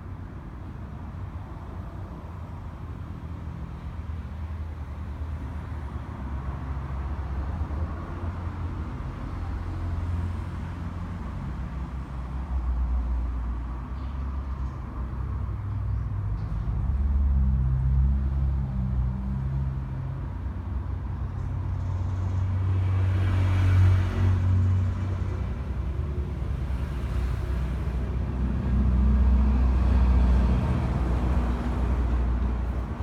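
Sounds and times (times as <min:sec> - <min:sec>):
road noise: 0:00.0 - 0:33.0.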